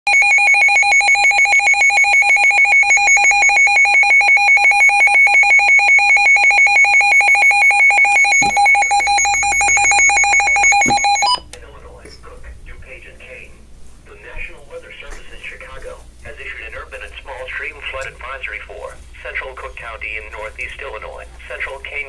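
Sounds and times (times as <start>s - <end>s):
pulsing electronic alarm beep: 0.1s - 11.4s.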